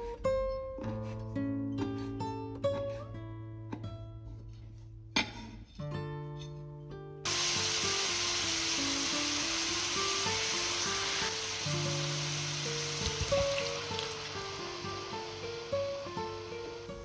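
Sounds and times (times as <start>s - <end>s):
food sizzling in a pan: 7.3s - 17.0s
background music: 9.0s - 17.0s.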